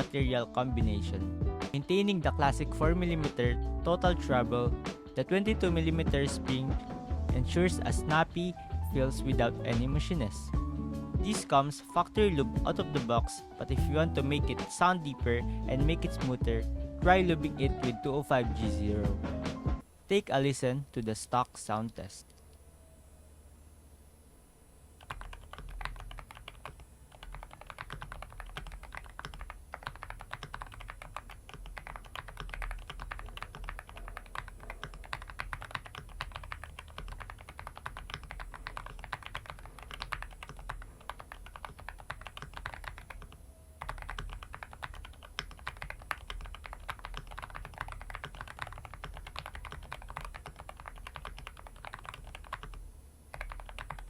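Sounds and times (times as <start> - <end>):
mechanical keyboard typing: 25.0 - 54.0.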